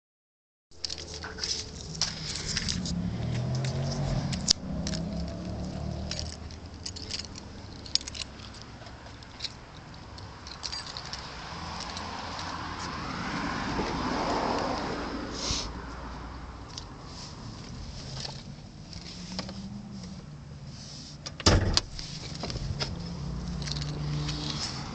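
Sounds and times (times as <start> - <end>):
keys jangling: 0.8 - 12.6, 22.2 - 24.8.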